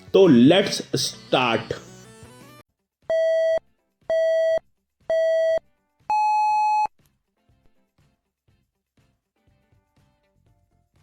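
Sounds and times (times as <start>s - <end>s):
electronic beep tones: 3.1s - 6.9s.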